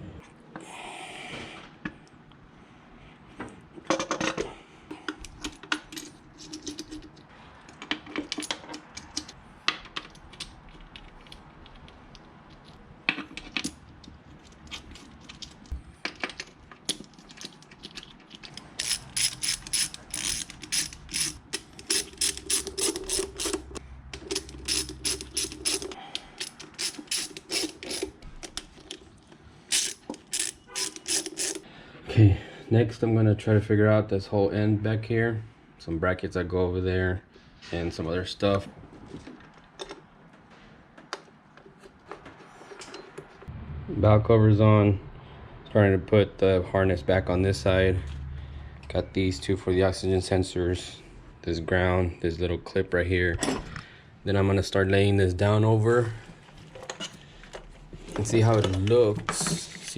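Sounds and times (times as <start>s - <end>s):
ratchet wrench clicking: 18.8s - 28.1s, 29.7s - 31.6s.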